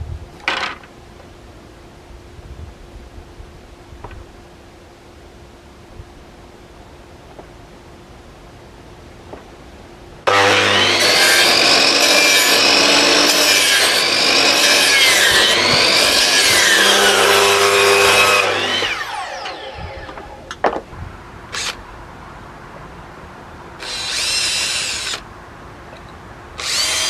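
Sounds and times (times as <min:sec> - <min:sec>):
electric power tool whining: 0:10.3 - 0:20.6, 0:23.8 - 0:25.2, 0:26.6 - 0:27.0.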